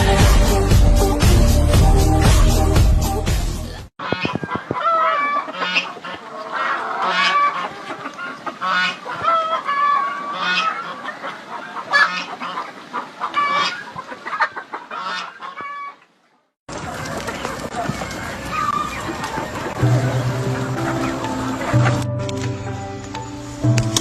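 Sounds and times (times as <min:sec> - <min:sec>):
hens clucking and squawking: 0:04.0 - 0:22.7.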